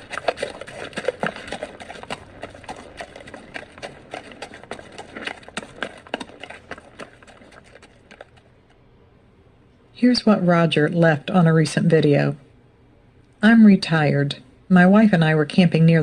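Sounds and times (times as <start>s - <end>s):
horse hooves clip-clopping: 0.0s - 8.7s.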